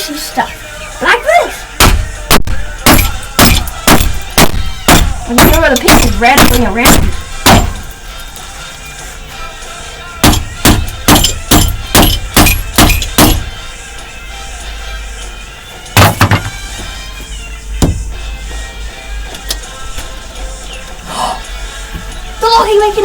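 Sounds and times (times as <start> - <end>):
background music: 0.0 - 23.0
hammer striking padlock: 1.8 - 7.9, 10.2 - 13.5, 16.0 - 16.6.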